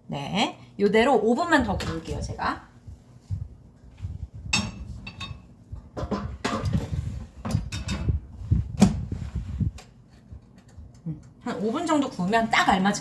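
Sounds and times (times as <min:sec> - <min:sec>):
kitchenware knocking and clacking: 0:04.5 - 0:08.2.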